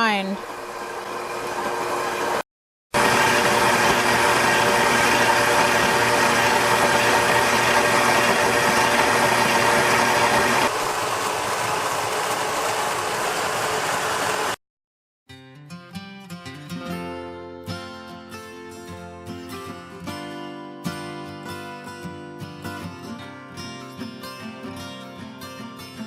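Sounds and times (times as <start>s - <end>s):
electric grain mill running: 0.0s - 2.4s, 3.0s - 14.6s
acoustic guitar music: 15.3s - 26.0s.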